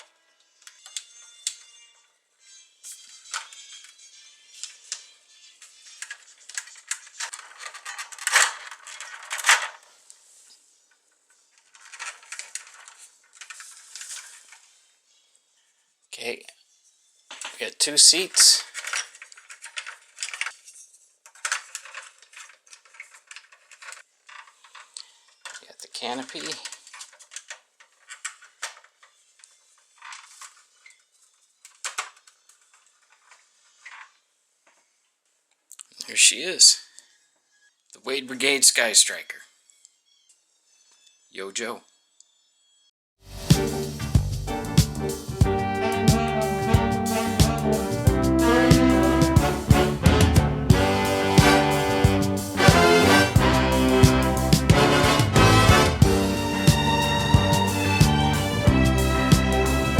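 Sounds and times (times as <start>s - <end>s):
plastic scraping rub: 2.5s - 15.3s, 18.2s - 34.9s
plastic toy parts clicking: 4.6s - 9.9s, 11.5s - 14.6s, 18.2s - 34.2s.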